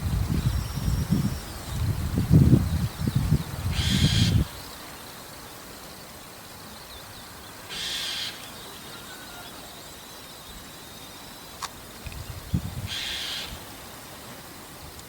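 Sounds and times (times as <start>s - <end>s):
faint background noise: 0.0s - 15.0s
starling harsh call: 3.7s - 4.5s, 7.7s - 9.6s, 12.9s - 13.6s
small click: 11.6s - 12.3s.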